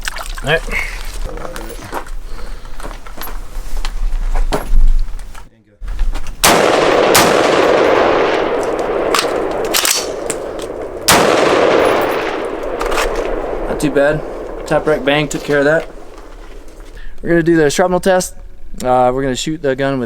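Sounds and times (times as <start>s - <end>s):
rifle shots: 6.4s - 16.9s
rifle being racked: 8.5s - 13.4s.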